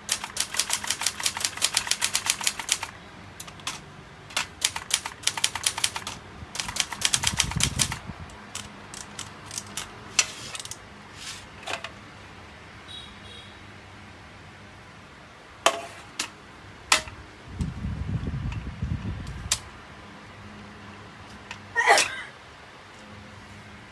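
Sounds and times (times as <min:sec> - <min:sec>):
typewriter key strikes: 0:00.0 - 0:09.9.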